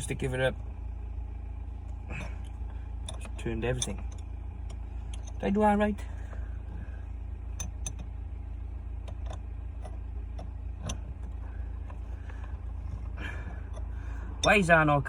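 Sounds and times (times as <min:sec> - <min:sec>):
steady low rumble: 0:00.0 - 0:15.0
gear knob clicks and knocks: 0:03.0 - 0:05.5, 0:07.6 - 0:08.1.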